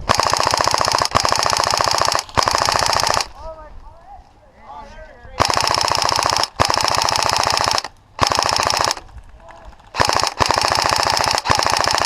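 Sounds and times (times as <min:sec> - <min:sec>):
airsoft rifle full-auto bursts: 0:00.0 - 0:03.4, 0:05.4 - 0:09.1, 0:09.7 - 0:12.0.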